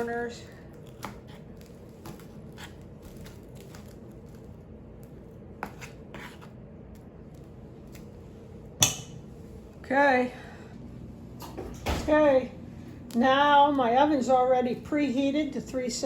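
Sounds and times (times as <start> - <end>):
spoon scraping batter: 0.8 - 8.1.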